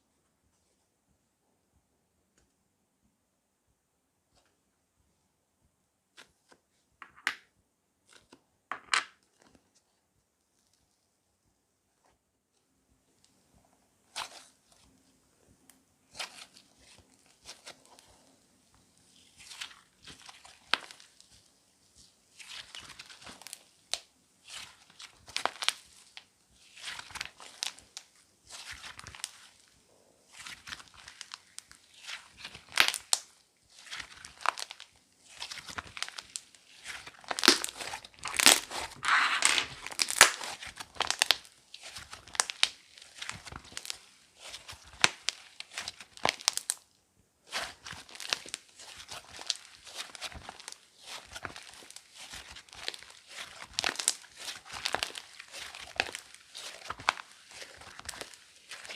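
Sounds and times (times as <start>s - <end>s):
slime crackling and popping: 19.2s - 21.4s, 22.0s - 46.8s, 47.5s - 58.9s.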